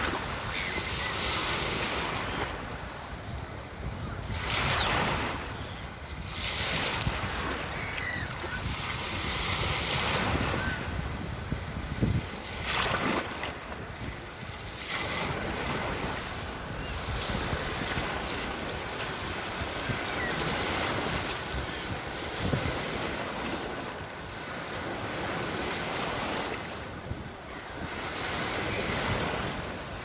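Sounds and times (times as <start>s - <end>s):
sea waves washing in: 0.0s - 3.0s, 11.6s - 30.0s
wind rumble on microphone: 0.0s - 30.0s.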